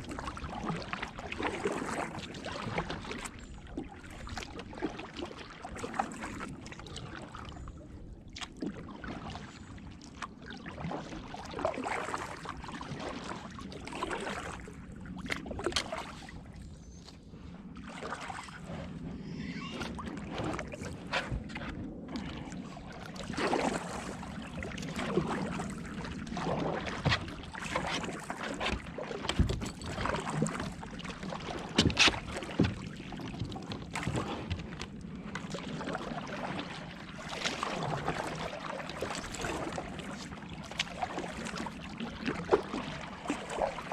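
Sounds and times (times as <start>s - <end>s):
paddle splashing in water: 0.0s - 43.9s
water sloshing against hull: 0.0s - 43.9s.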